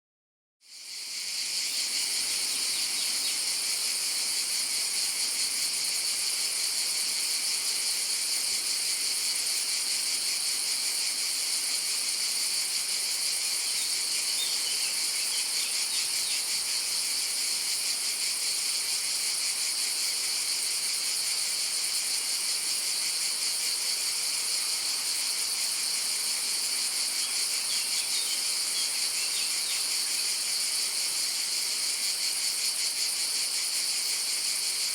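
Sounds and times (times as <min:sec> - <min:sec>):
cicadas buzzing: 0:00.7 - 0:34.9
faint bird chirps: 0:13.8 - 0:16.5.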